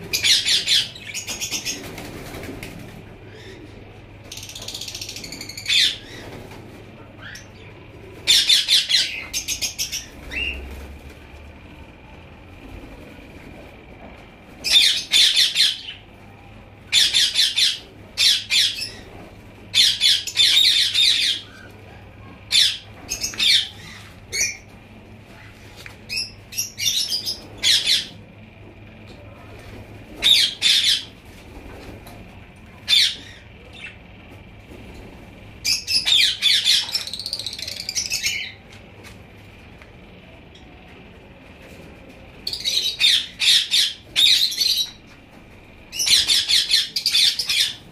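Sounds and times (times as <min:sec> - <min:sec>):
parrots squawking: 0:00.1 - 0:01.8, 0:04.3 - 0:06.2, 0:07.2 - 0:10.6, 0:14.6 - 0:16.0, 0:16.9 - 0:19.1, 0:19.7 - 0:21.7, 0:22.5 - 0:24.7, 0:25.3 - 0:28.2, 0:30.2 - 0:31.1, 0:35.6 - 0:38.6, 0:42.4 - 0:45.0, 0:45.9 - 0:47.9.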